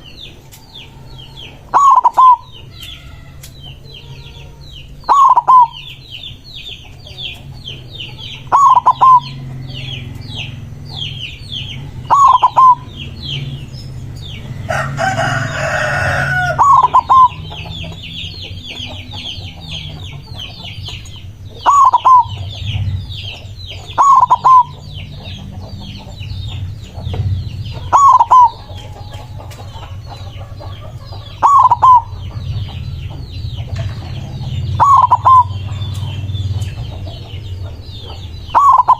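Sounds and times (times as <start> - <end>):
high bird chirping: 0.0 - 38.9
rough bird call: 0.0 - 38.9
dove two-note coo: 1.1 - 6.0, 8.2 - 11.1, 12.0 - 13.0, 15.2 - 17.6, 21.6 - 22.8, 23.9 - 24.9, 27.8 - 29.5, 31.4 - 32.9, 34.6 - 36.0, 38.5 - 38.9.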